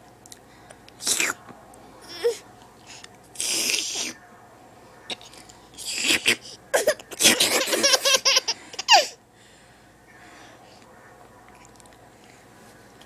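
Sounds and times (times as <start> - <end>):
high-pitched laughter: 7.4 - 9.1.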